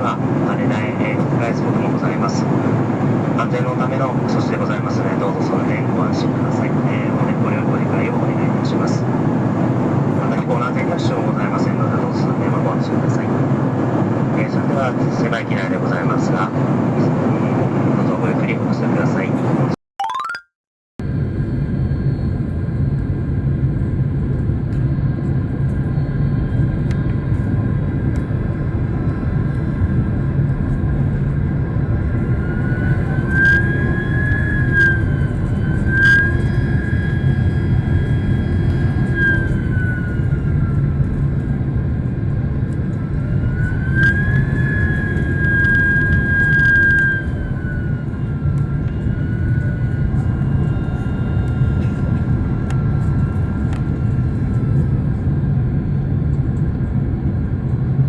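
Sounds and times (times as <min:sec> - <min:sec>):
jet cabin rumble: 0:00.0 - 0:19.8
whining engine tone: 0:29.0 - 0:58.0.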